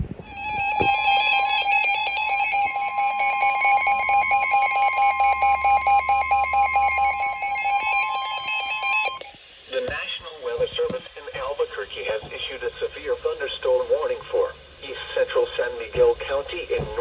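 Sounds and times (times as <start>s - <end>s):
emergency alert tone: 0.2s - 9.3s.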